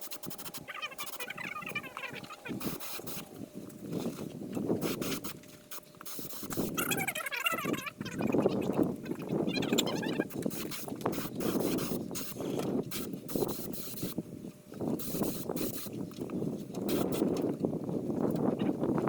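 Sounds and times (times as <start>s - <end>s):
spray gun hissing: 0.0s - 3.3s, 4.8s - 6.8s, 10.3s - 14.2s, 15.0s - 15.9s, 16.9s - 17.4s.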